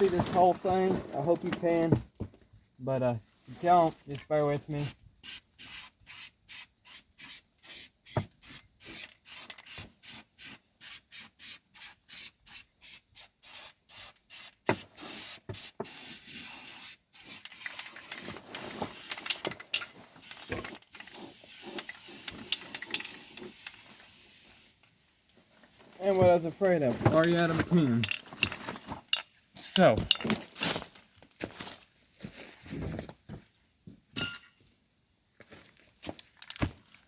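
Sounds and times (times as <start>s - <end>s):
aerosol can spraying: 4.8s - 19.5s, 20.2s - 24.8s.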